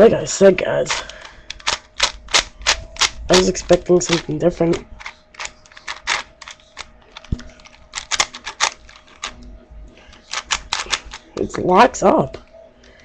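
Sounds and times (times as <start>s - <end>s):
puzzle cube clicking as twisted: 0.9s - 9.4s, 10.1s - 11.3s.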